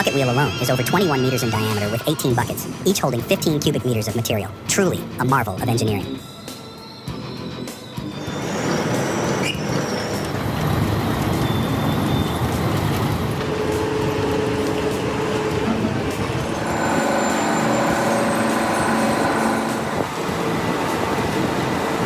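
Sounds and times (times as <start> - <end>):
heavy machinery running: 8.3 - 22.0.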